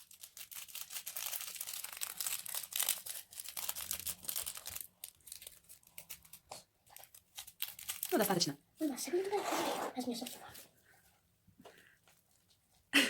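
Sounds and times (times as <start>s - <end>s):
plastic crinkling and crackling: 0.0s - 9.4s.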